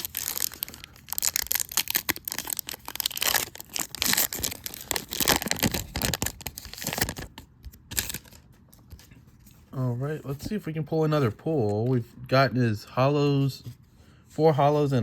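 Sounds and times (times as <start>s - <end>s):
foil wrapper crinkling: 0.0s - 8.4s.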